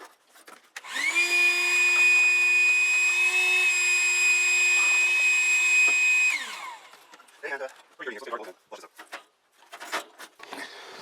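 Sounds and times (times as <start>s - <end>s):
small electric motor whining: 0.8s - 7.3s.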